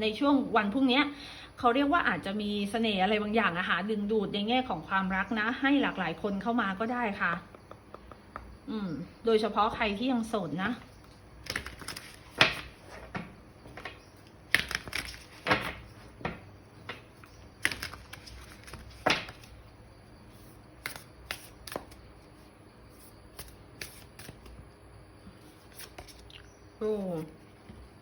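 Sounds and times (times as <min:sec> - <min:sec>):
cards being shuffled: 0:11.0 - 0:19.6, 0:20.4 - 0:22.0, 0:23.0 - 0:24.6, 0:25.5 - 0:26.4.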